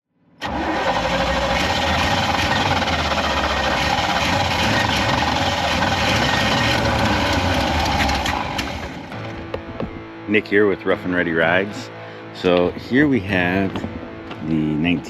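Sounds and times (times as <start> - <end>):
car engine idling: 0.4 - 9.6.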